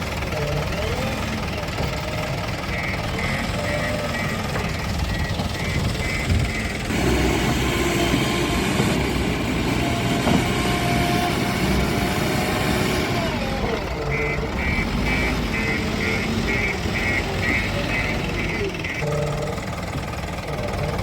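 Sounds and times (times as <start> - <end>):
backhoe diesel engine under load: 0.0 - 21.0
high reversing beeps: 2.6 - 6.9.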